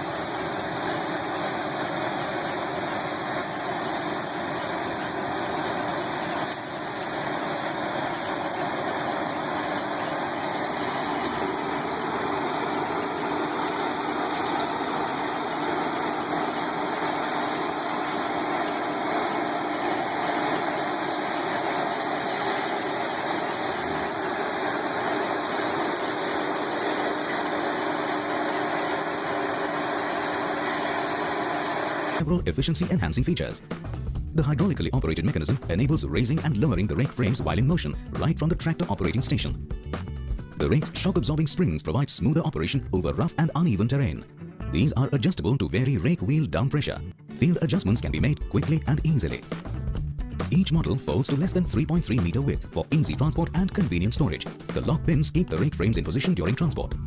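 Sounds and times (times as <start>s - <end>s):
tractor engine running: 0.0s - 32.2s.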